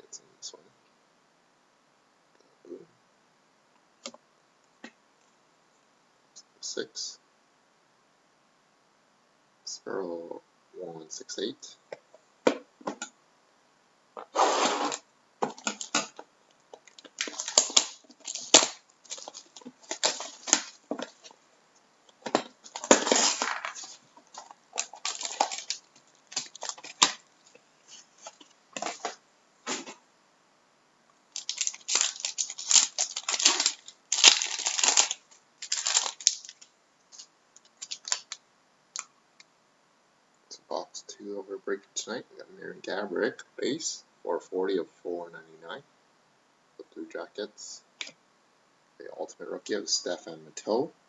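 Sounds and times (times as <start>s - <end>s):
card packaging crinkling and tearing: 14.7s - 16.2s, 16.8s - 21.4s, 22.2s - 30.0s, 31.3s - 38.4s.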